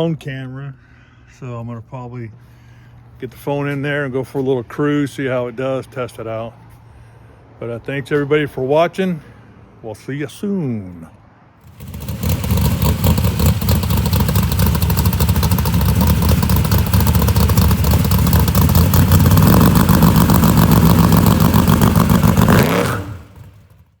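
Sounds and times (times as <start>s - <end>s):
car engine running: 11.6s - 24.0s.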